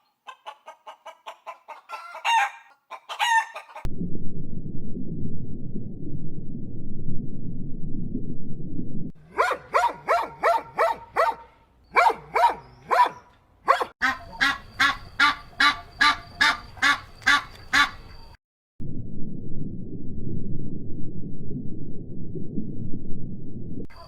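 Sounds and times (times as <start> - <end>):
low rumbling noise: 3.9 - 9.2, 18.8 - 23.9
bird honking calls: 14.0 - 18.1.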